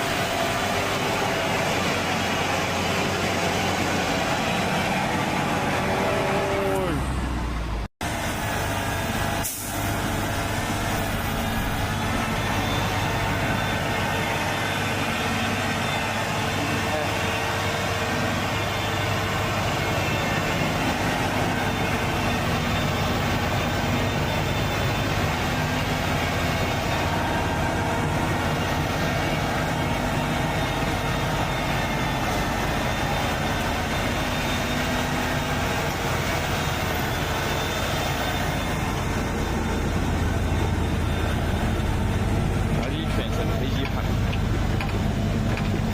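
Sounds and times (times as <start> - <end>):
truck engine running: 0.0 - 45.9.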